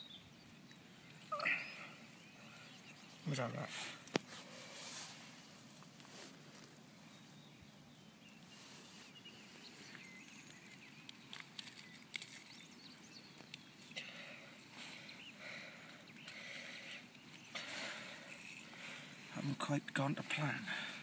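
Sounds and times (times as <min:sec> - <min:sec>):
faint outdoor ambience: 0:00.0 - 0:21.0
handling clicks and ticks: 0:10.2 - 0:13.7.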